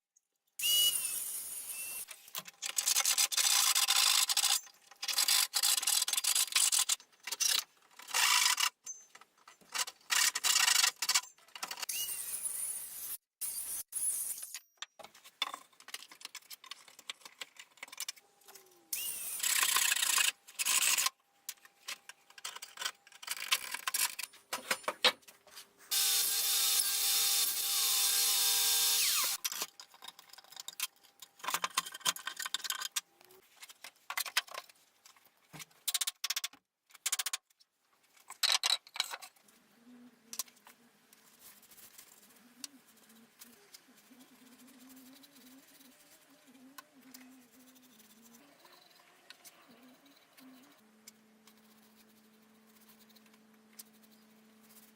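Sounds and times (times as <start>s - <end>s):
power tool running: 25.9s - 29.4s.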